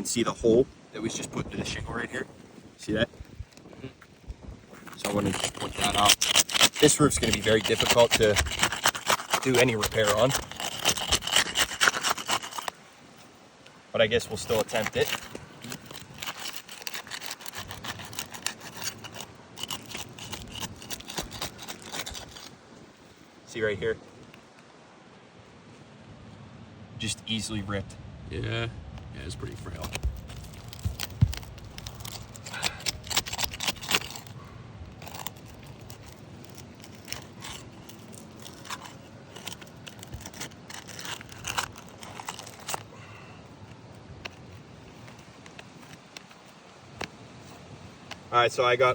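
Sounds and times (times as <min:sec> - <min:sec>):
shingles scraping and tearing: 0:02.3 - 0:13.4, 0:14.0 - 0:23.2, 0:29.4 - 0:48.4
sealant crackling clicks: 0:04.9 - 0:12.8, 0:14.4 - 0:22.6, 0:29.5 - 0:47.2.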